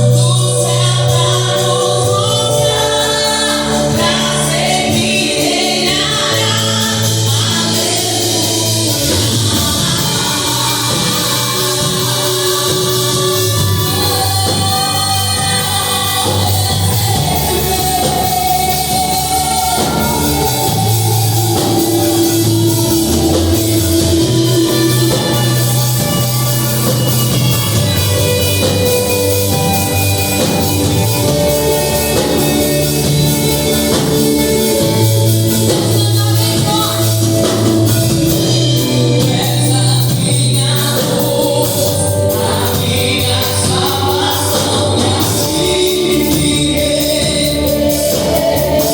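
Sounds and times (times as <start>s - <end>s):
heavy bass line: 0.0s - 48.9s
singing: 0.0s - 48.9s.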